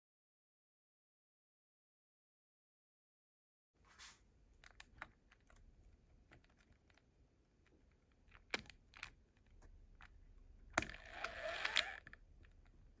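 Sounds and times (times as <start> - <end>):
rustling and scraping: 3.8 - 4.3
small clicks and taps: 4.6 - 12.8.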